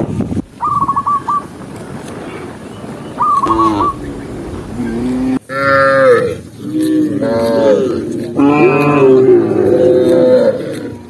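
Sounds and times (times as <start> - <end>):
cattle mooing: 3.5 - 11.0.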